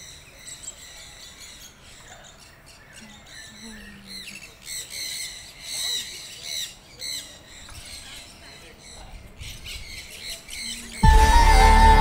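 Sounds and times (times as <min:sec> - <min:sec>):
birds chirping and squawking: 0:00.0 - 0:11.1.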